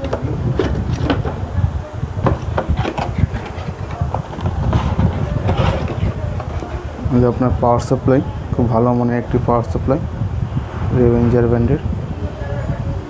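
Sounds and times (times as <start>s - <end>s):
hardware handling knocks and clicks: 0.0s - 7.4s.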